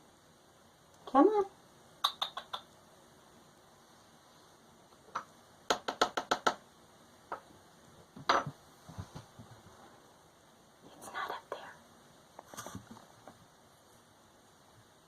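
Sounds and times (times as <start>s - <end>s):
sharp taps and clicks: 2.0s - 2.8s, 5.0s - 6.6s.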